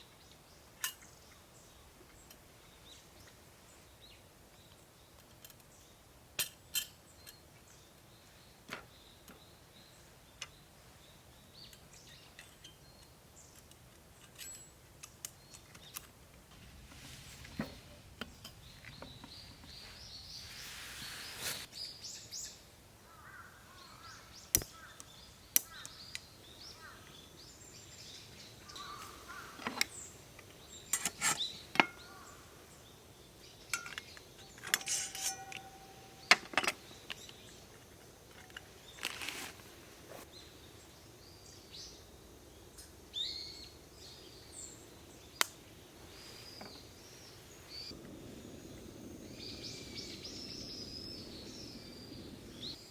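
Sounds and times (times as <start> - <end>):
faint bird chirps: 17.6 - 37.7, 40.3 - 52.9.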